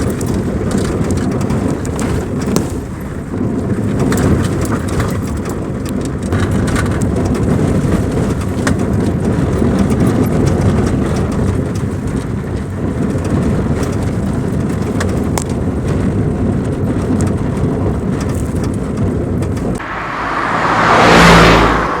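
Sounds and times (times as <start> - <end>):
knocks and rattles: 0.0 - 19.8
car road rumble: 0.0 - 22.0
rushing noise: 19.8 - 22.0.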